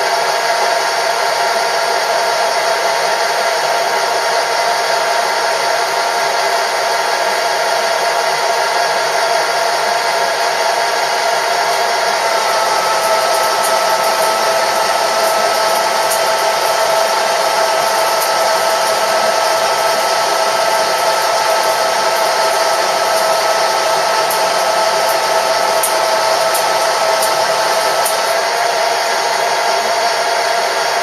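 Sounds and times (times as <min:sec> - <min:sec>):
machine tool motor and gear whine: 0:11.0 - 0:31.0.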